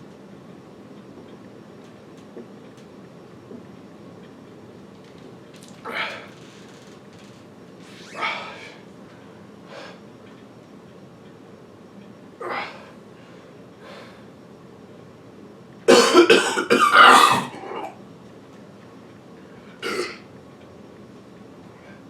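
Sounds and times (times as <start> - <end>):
man coughing: 15.9 - 17.9, 19.8 - 20.2.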